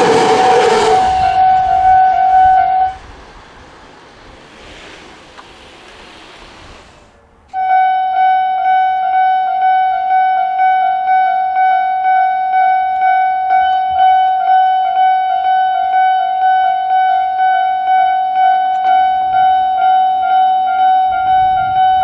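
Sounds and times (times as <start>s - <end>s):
level-crossing warning bell: 0.0s - 3.0s, 7.5s - 22.0s
rushing noise: 0.0s - 7.5s, 19.0s - 22.0s.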